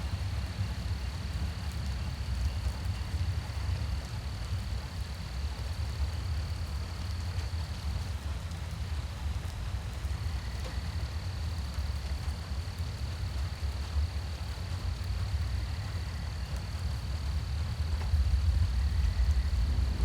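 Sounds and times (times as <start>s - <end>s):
steady rain: 0.0s - 20.0s
low rumble: 18.0s - 20.0s.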